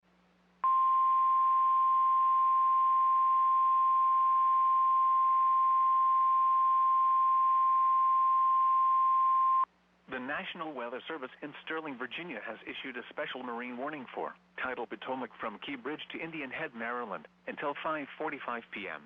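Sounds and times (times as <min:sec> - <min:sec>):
steady high alarm beep: 0:00.6 - 0:09.7
faint radio hiss: 0:09.6 - 0:19.0.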